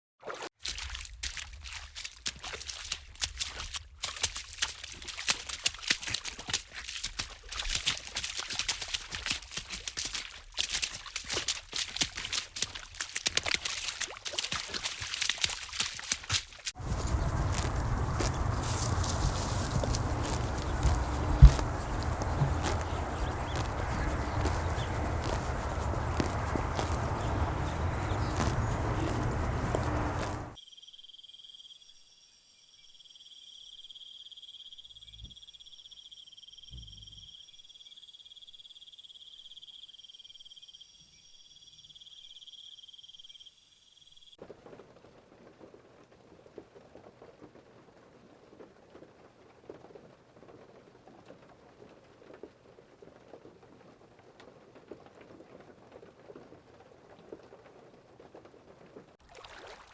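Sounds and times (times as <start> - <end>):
pattering crackling noise: 16.7 - 30.6
crickets chirring: 16.8 - 44.4.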